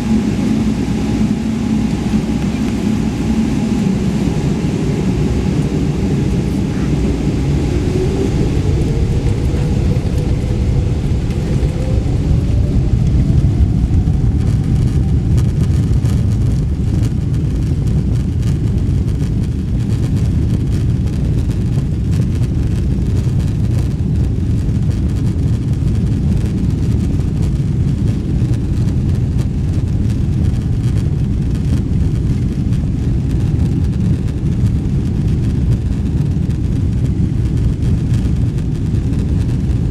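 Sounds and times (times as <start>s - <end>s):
jet engines rumbling and whining: 0.0s - 39.9s.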